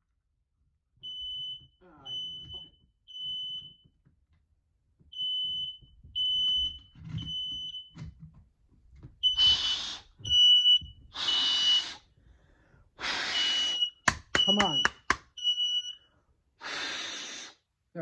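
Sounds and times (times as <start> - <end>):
smoke alarm beeping: 1.1 - 3.9, 9.2 - 11.9, 13.4 - 16.1.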